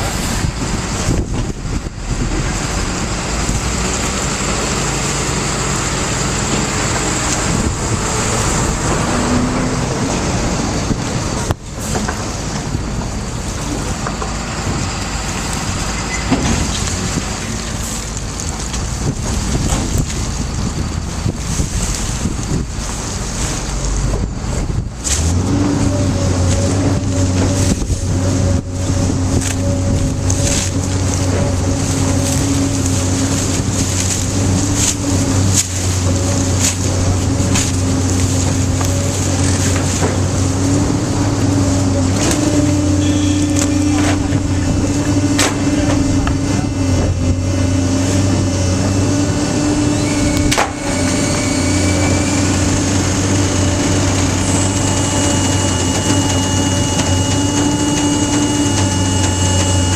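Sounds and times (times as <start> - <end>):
hydraulic machine humming: 0.0 - 59.9
wind buffeting microphone: 0.0 - 59.9.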